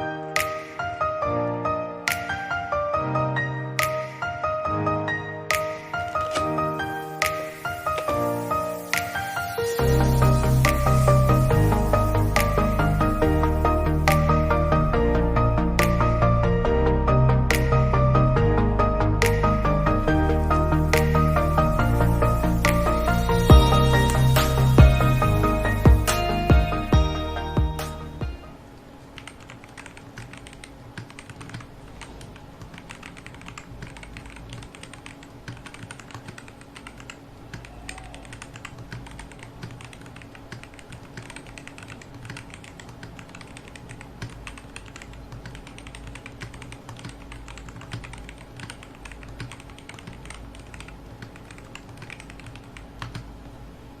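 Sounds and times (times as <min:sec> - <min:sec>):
background music: 0:00.0 - 0:28.6
mechanical keyboard typing: 0:05.6 - 0:08.2, 0:29.1 - 0:53.3.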